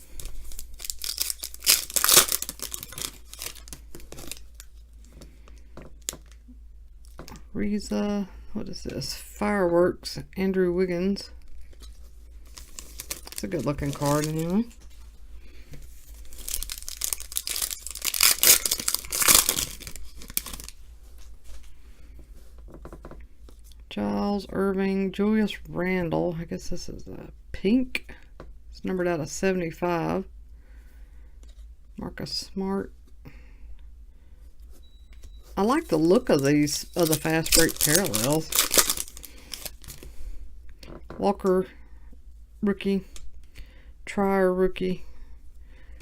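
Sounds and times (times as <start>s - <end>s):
cards rustling: 0.0s - 4.8s, 12.4s - 15.0s, 15.7s - 21.6s, 35.6s - 40.2s
wrapper tearing and crinkling: 0.0s - 4.8s, 12.5s - 14.8s, 16.0s - 20.8s, 35.7s - 40.1s.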